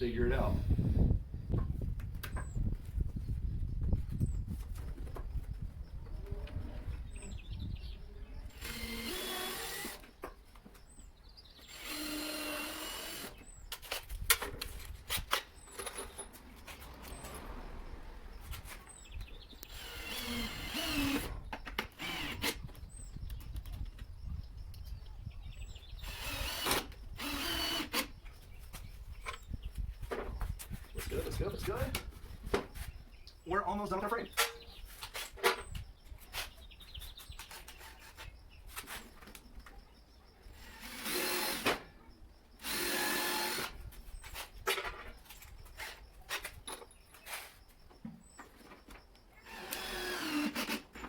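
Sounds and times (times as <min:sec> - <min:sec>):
power drill driving screws: 0:08.5 - 0:10.1, 0:11.7 - 0:13.4, 0:19.7 - 0:22.6, 0:26.0 - 0:28.1, 0:40.6 - 0:41.8, 0:42.6 - 0:43.8, 0:49.4 - 0:51.0.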